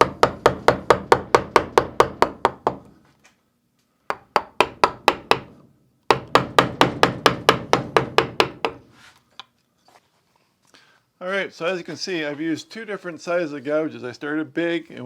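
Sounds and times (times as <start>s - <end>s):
mallet tapping carving gouge: 0.0s - 2.9s, 4.1s - 8.8s.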